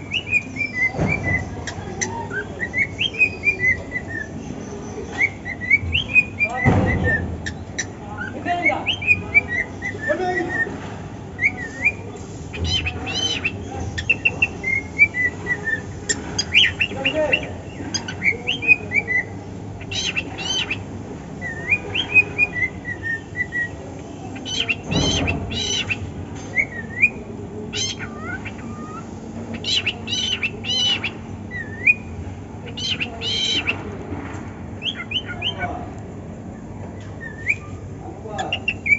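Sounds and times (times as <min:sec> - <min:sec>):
cockatiel whistling: 0:00.0 - 0:04.4, 0:05.1 - 0:10.7, 0:11.4 - 0:20.8, 0:21.4 - 0:23.8, 0:24.4 - 0:33.8, 0:34.8 - 0:35.7, 0:37.1 - 0:37.8, 0:38.4 - 0:38.9
cockatiel squawky calls: 0:11.4 - 0:20.8, 0:24.4 - 0:26.0, 0:26.6 - 0:32.1, 0:32.7 - 0:33.8, 0:34.8 - 0:35.8.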